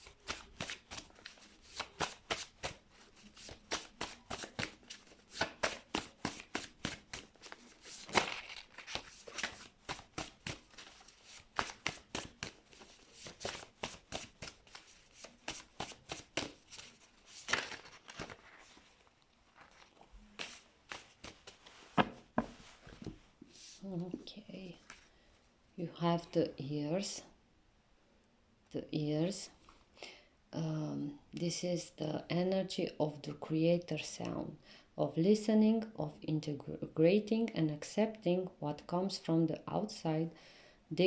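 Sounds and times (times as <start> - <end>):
cards being shuffled: 0.0 - 23.8.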